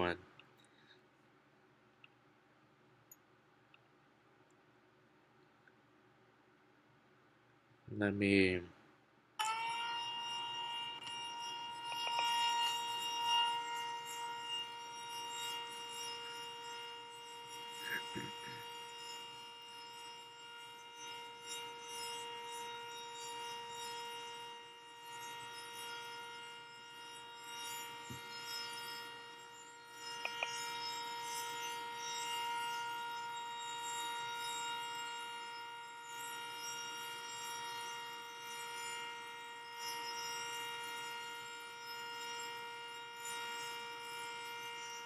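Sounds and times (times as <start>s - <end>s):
warning siren steady tone: 9.4s - 45.0s.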